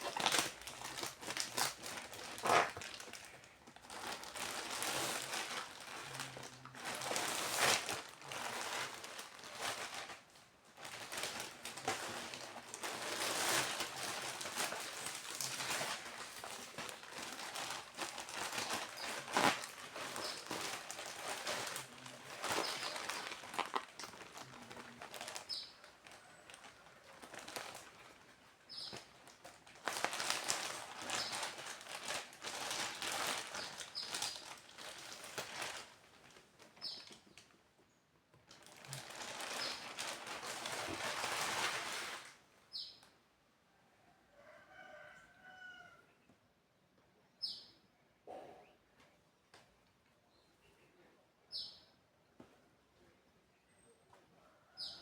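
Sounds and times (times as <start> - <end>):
plastic packaging crinkling: 0.0 - 37.5, 38.4 - 42.4.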